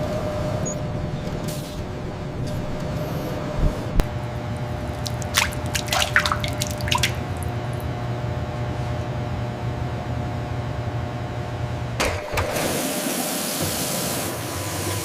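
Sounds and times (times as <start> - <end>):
steady low hum: 1.9 - 12.0
small drips: 4.8 - 7.9.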